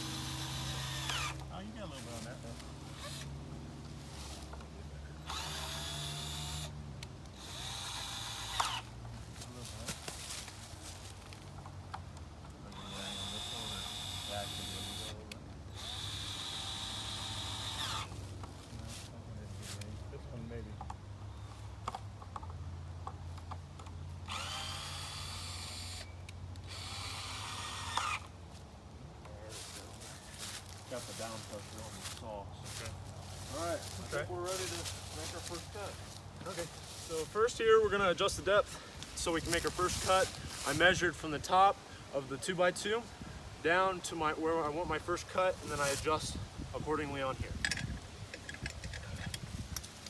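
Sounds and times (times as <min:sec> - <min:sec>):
power drill driving screws into wood: 0:00.0 - 0:01.5, 0:02.9 - 0:03.3, 0:05.2 - 0:06.8, 0:07.4 - 0:09.0, 0:12.7 - 0:18.1, 0:24.2 - 0:28.4.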